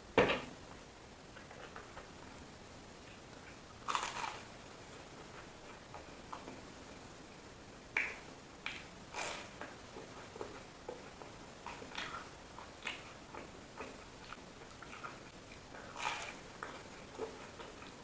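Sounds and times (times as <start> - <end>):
food being chewed: 3.0 - 7.0, 7.9 - 18.0.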